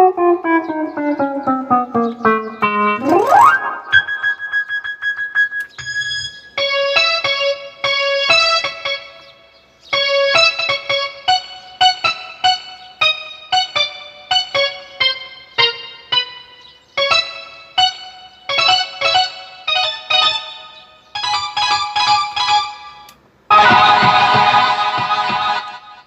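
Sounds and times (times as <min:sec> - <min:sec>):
rapid repeating synth note: 0:00.0 - 0:05.4
plucked synth notes: 0:00.0 - 0:08.0.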